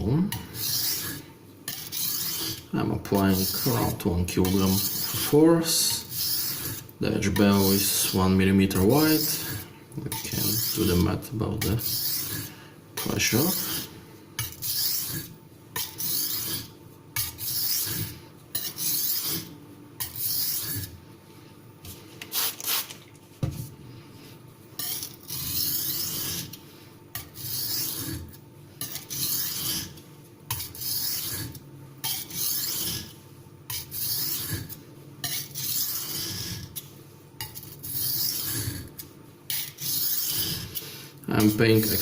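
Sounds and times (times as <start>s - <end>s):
knife rasping on whetstone: 0.5s - 20.9s, 24.8s - 26.6s, 27.2s - 40.8s.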